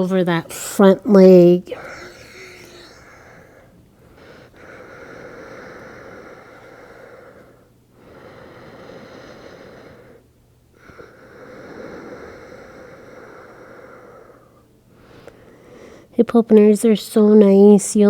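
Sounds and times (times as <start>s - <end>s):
slow breathing: 1.6s - 16.1s.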